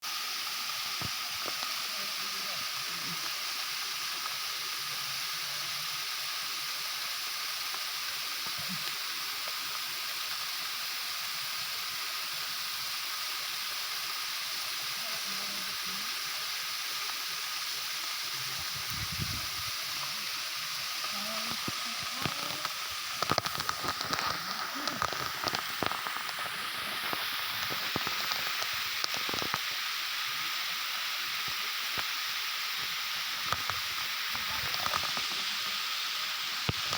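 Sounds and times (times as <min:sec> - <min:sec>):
waterfall rushing: 0:14.8 - 0:36.9.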